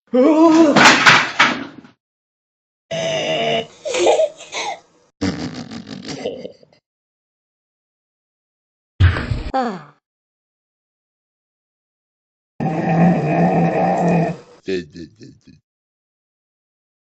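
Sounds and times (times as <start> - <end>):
person making fake burps: 2.9 - 3.7, 5.2 - 6.5.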